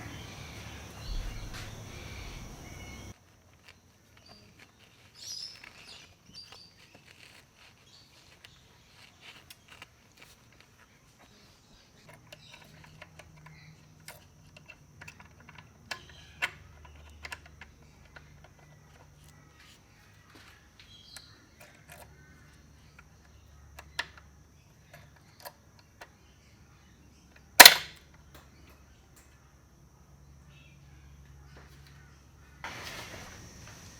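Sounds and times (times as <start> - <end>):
metal parts clicking and tapping: 12.0 - 19.4, 20.3 - 26.2, 27.3 - 29.4.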